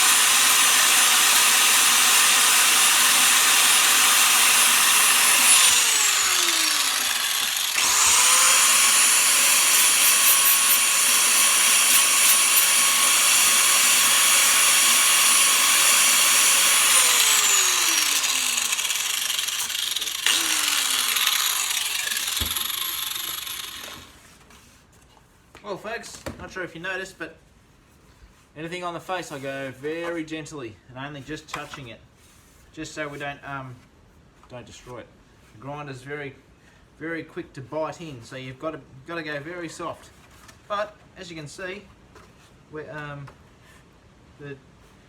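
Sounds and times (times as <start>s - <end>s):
angle grinder grinding fibreglass: 0.0s - 24.3s.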